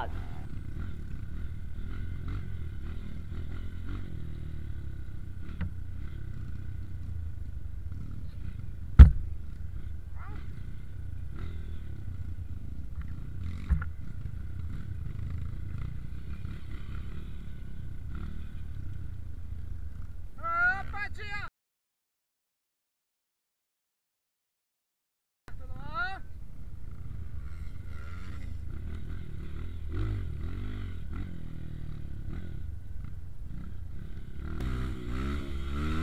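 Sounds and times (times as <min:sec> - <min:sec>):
dirt bike engines rumbling: 0:00.0 - 0:21.5, 0:25.5 - 0:36.0.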